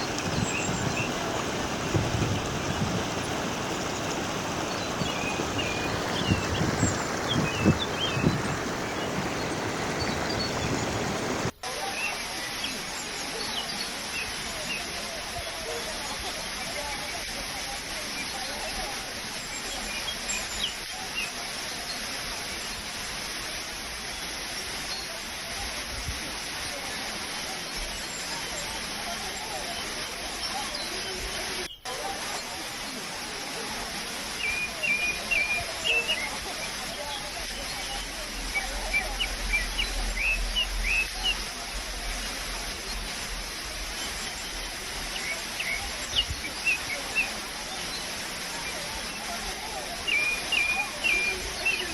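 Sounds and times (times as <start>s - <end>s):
birds chirping: 0.0s - 12.8s, 43.9s - 49.3s, 50.0s - 51.9s
waterfall rushing: 0.0s - 51.9s.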